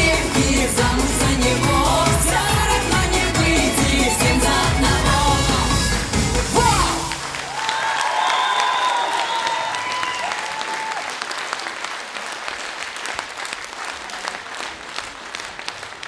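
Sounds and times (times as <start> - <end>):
dance music held notes: 0.0 - 7.6
audience applauding: 4.5 - 16.0.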